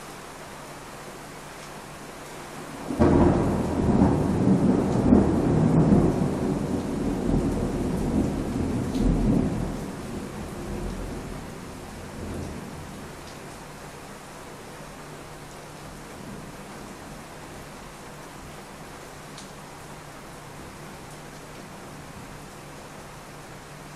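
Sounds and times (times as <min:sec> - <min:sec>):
steady rain: 0:00.0 - 0:23.9
thunderclap with rolling rumble: 0:02.9 - 0:11.4.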